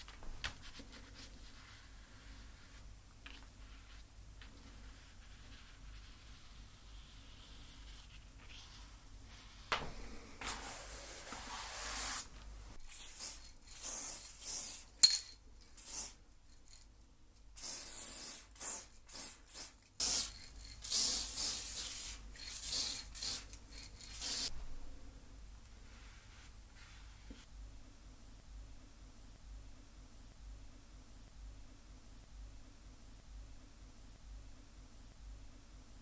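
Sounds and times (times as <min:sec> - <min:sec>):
spray paint can hissing: 0:12.8 - 0:15.2, 0:15.8 - 0:16.2, 0:17.6 - 0:24.5.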